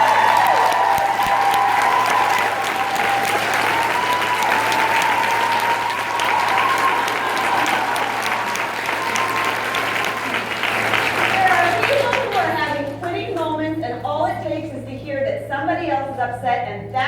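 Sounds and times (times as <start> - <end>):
audience clapping: 0.0 - 13.5.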